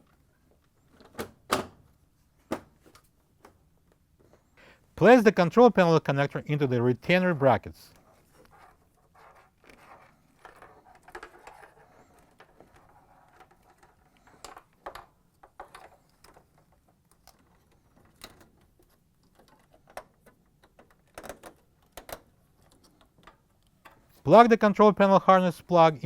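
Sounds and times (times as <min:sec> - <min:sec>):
plastic parts clicking: 0:09.6 - 0:24.2.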